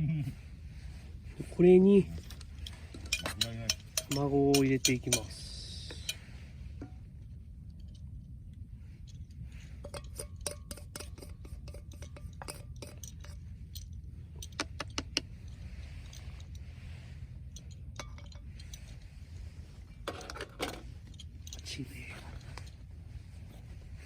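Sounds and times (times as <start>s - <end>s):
utensil clinking against dish: 2.6s - 7.0s, 9.8s - 13.4s, 18.0s - 18.9s.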